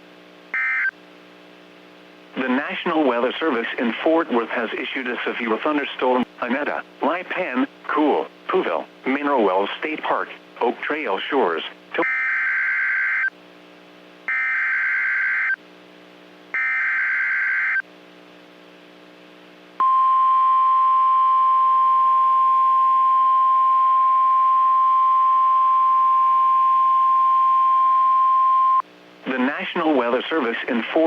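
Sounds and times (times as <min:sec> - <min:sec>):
steady warning alarm tone: 0:12.0 - 0:13.3, 0:14.3 - 0:15.6, 0:16.6 - 0:17.8.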